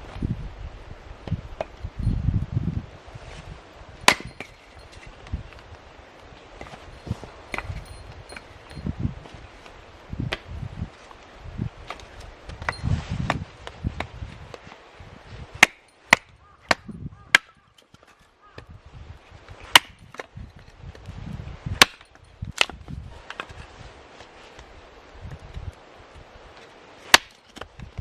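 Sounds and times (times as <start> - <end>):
axe chopping firewood: 4.0 - 4.6, 7.5 - 8.5, 15.5 - 17.6, 19.6 - 20.4, 21.8 - 23.5, 27.0 - 27.8.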